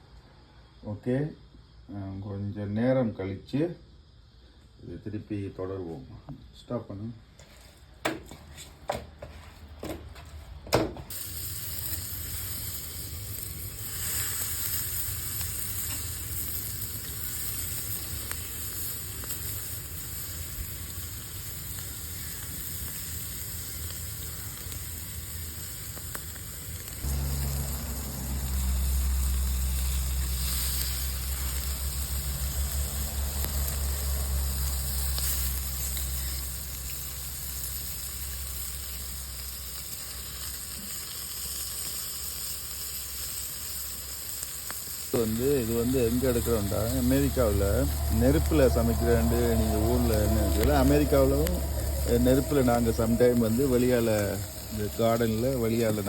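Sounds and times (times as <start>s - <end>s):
chicken sizzling on a grill: 11.1s - 56.0s
low steady rumble: 26.9s - 37.6s, 45.1s - 56.0s.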